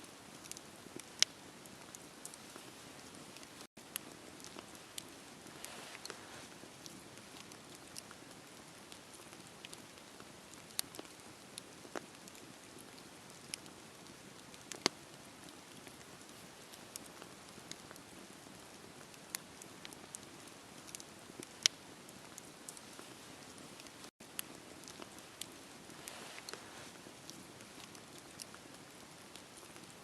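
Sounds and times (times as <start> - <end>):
bonfire burning hiss: 0.0 - 30.0
fire pops and snaps: 0.2 - 30.0.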